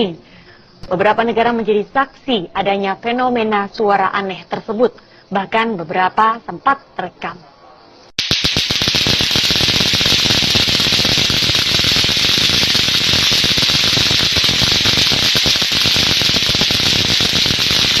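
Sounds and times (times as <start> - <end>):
harsh crackling static hiss: 8.1 - 18.0.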